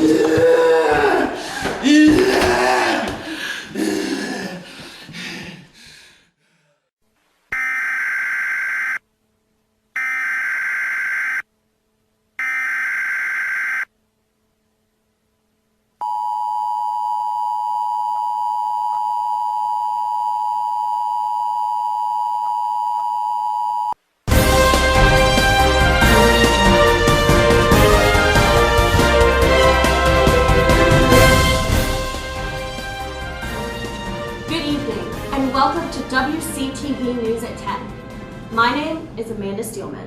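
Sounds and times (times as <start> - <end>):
news theme music: 24.3 - 39.4.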